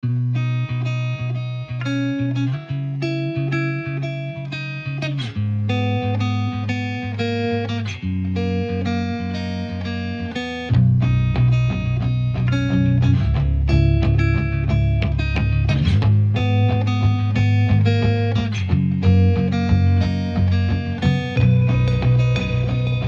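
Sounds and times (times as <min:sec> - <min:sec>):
plucked guitar notes: 0:00.0 - 0:23.0
bass line: 0:09.7 - 0:23.0.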